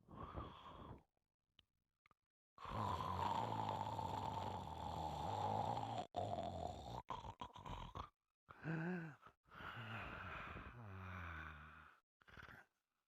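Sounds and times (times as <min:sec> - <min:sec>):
pet snoring: 0:02.6 - 0:08.1.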